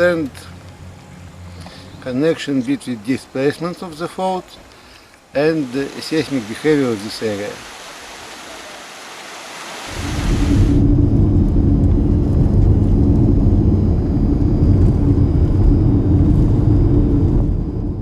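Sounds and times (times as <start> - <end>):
soft hiss: 1.5 - 10.2
loud low rumble: 9.9 - 18.0.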